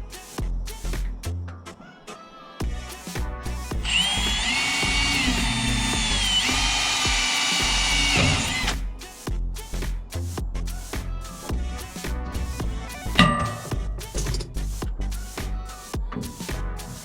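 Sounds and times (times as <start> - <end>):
background music with steady beat: 0.0 - 17.0
power drill whine: 3.9 - 8.8.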